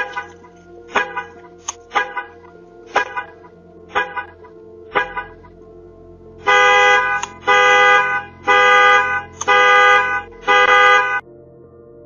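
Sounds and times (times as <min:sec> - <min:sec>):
car alarm horn blasts: 0:00.0 - 0:05.5, 0:06.4 - 0:11.3.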